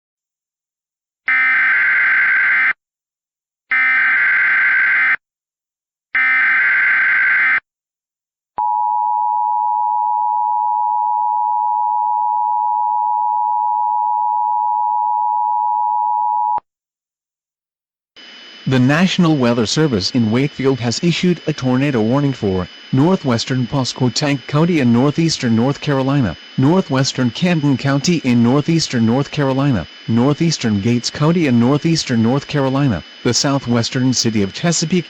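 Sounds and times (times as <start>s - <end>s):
data burst tones: 18.2s - 35.0s.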